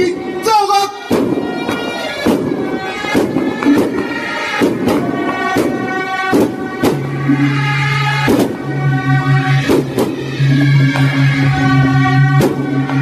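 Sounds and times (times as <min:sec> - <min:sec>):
suona reed melody: 0:00.0 - 0:13.0
cymbal crashes: 0:01.0 - 0:13.0
drum strokes: 0:01.0 - 0:13.0
gong strokes: 0:01.4 - 0:13.0.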